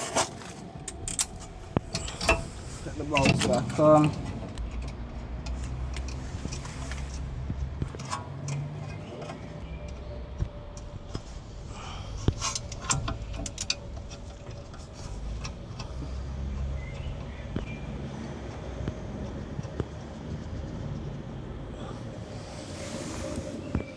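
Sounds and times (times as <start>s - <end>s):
steady low hum: 0.0s - 23.9s.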